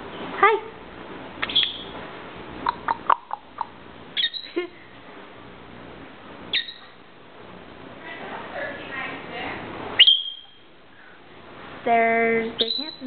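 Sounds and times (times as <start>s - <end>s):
parrot chirping and calling: 1.4s - 2.0s, 2.6s - 4.7s, 6.5s - 7.0s, 10.0s - 10.6s, 12.6s - 13.0s.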